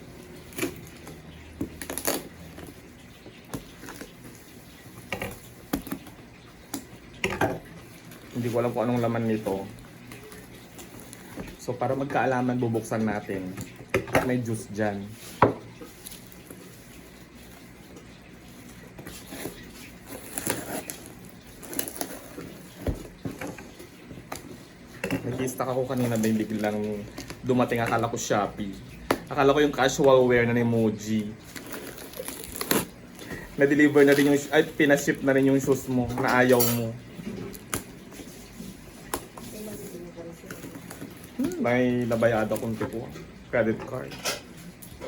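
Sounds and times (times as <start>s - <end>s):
parcel rustling and crackling: 0.0s - 43.4s.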